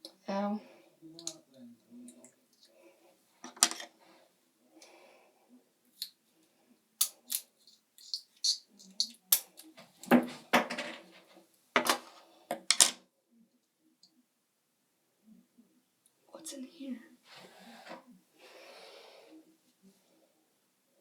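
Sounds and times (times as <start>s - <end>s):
plastic parts clicking and clattering: 3.4s - 3.9s.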